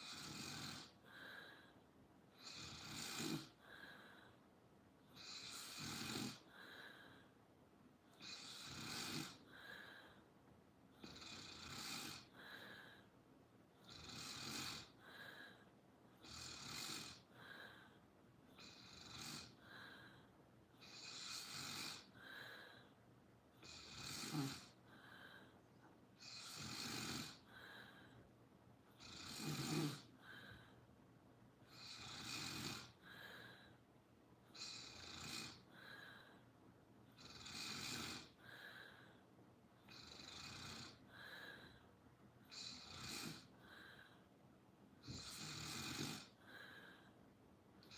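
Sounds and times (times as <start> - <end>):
slow snoring: 0.0 - 4.4, 5.1 - 7.2, 8.1 - 10.2, 10.9 - 13.1, 13.8 - 15.6, 16.2 - 23.0, 23.6 - 25.5, 26.2 - 28.2, 28.9 - 30.8, 31.6 - 33.8, 34.5 - 36.4, 37.1 - 39.2, 39.8 - 41.8, 42.4 - 44.2, 45.0 - 47.2.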